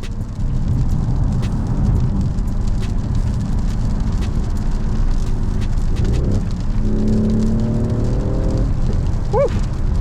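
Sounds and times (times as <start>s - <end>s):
rain hitting car: 0.0s - 10.0s
car engine accelerating hard: 5.9s - 10.0s.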